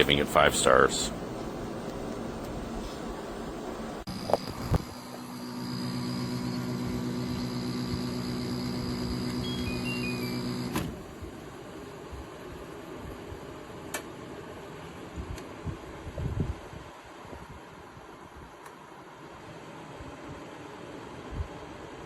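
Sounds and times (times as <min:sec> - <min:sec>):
electric motor humming: 0:01.1 - 0:10.8.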